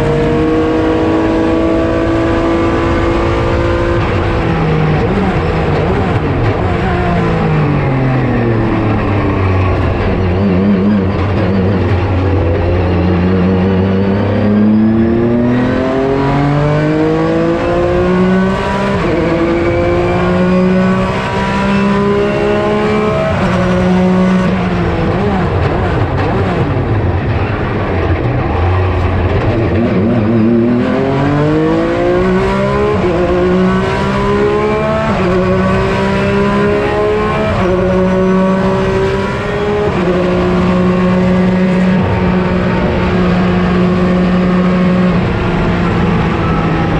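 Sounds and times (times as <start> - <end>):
racing engine at full throttle: 0.0 - 46.9.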